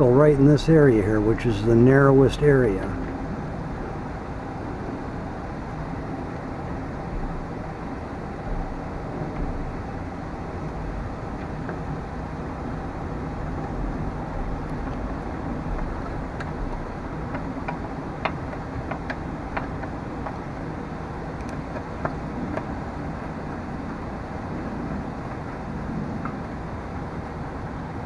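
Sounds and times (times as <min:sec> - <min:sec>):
low background hum: 0:00.0 - 0:28.0.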